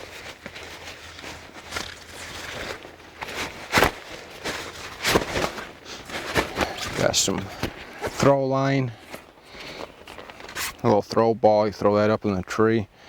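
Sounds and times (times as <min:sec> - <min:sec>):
climbing gear rustling: 0:00.0 - 0:08.3, 0:08.9 - 0:10.9.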